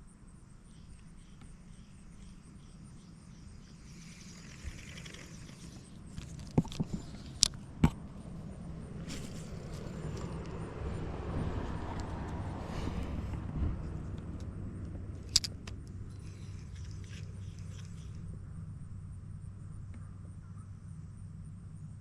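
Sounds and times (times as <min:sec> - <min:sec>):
vehicle approaching rumble: 0:01.5 - 0:22.0
sharp clicks: 0:14.2 - 0:18.2.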